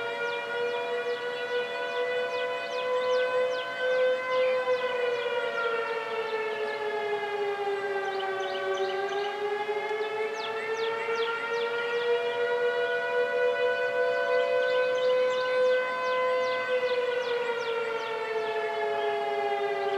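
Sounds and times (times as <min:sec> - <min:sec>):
warning sirens wailing: 0:00.0 - 0:19.9.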